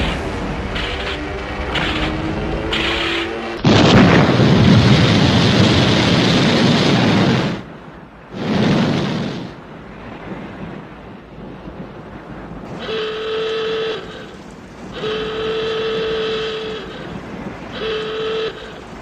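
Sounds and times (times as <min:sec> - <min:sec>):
loud rushing blast: 0:00.0 - 0:11.5
low rumble: 0:00.0 - 0:17.9.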